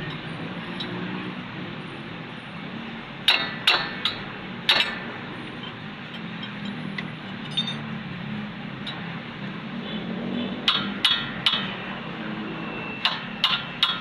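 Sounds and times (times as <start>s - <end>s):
metal clanking on metal: 3.3s - 7.8s.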